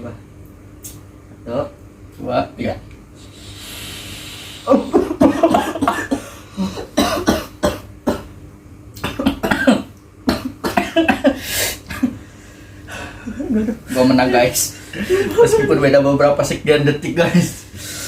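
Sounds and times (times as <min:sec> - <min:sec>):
breathy hiss: 0:03.2 - 0:04.8
person coughing harshly: 0:04.8 - 0:08.4, 0:09.0 - 0:12.1.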